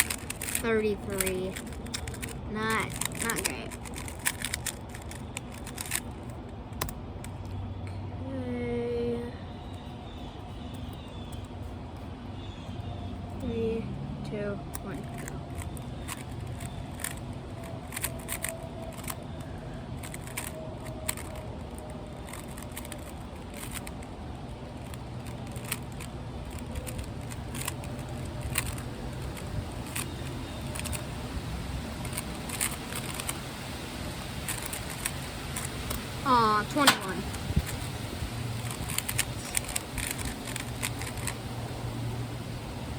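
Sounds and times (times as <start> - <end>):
plastic puzzle cube clicking: 0.0 - 7.6, 10.6 - 12.0, 14.7 - 31.1, 32.0 - 33.4, 38.6 - 41.4
wind rumble on microphone: 25.5 - 42.9.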